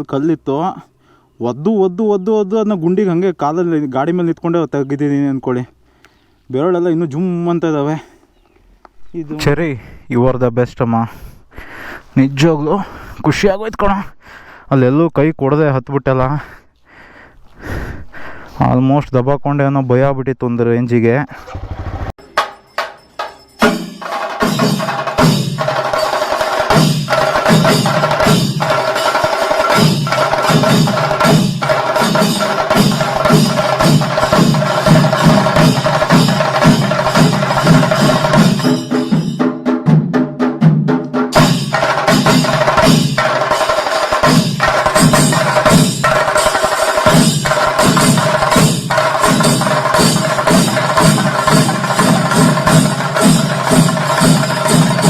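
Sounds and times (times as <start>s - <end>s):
music with percussive beat: 21.8s - 55.0s.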